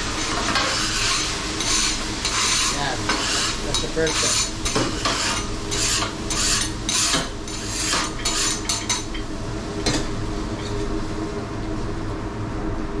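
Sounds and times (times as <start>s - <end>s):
metal utensil scraping griddle: 0.1s - 9.1s.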